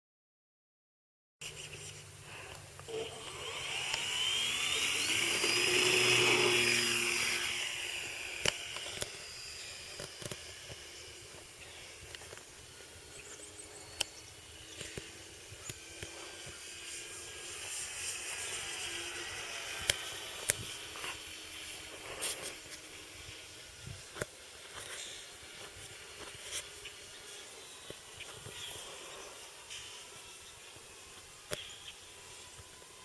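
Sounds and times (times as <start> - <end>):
model plane motor whining: 1.5 - 33.0
sharp clicks: 2.5 - 11.0.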